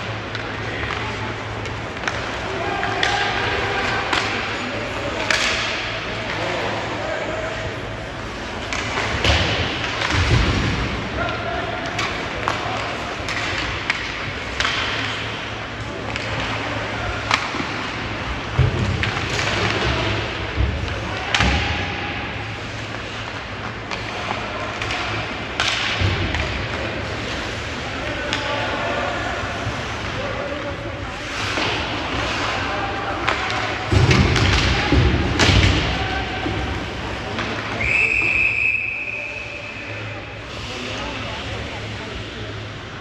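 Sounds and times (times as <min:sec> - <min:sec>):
murmur of rink and crowd: 0:00.0 - 0:43.0
hockey sticks and puck knocking: 0:00.2 - 0:06.6, 0:08.4 - 0:28.7, 0:31.4 - 0:37.9
referee's whistle blast: 0:37.8 - 0:39.9.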